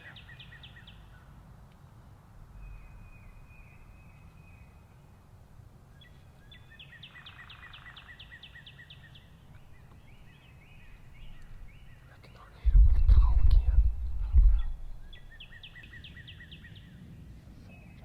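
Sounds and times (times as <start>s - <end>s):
songbirds singing: 0.0s - 18.0s
steady low rumble: 12.4s - 15.8s.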